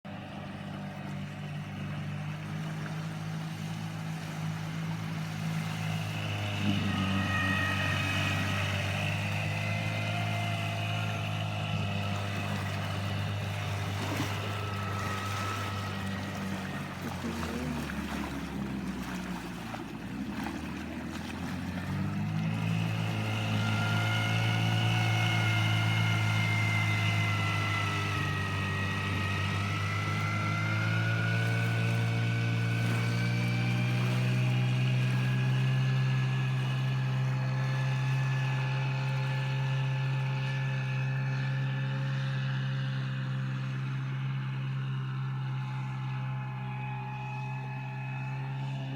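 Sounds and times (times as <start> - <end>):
outboard motor running: 0.0 - 48.9.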